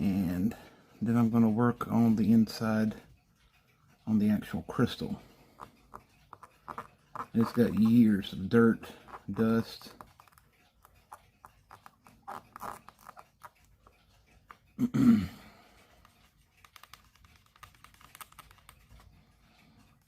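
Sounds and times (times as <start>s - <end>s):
faint scratching and light clicking: 0.0s - 14.8s, 15.6s - 20.0s.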